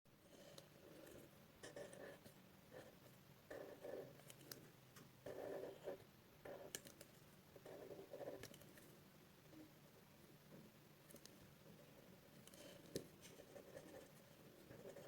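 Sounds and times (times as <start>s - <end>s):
pen scratching on paper: 0.3s - 4.6s, 5.2s - 6.8s, 7.6s - 8.6s, 11.8s - 15.0s.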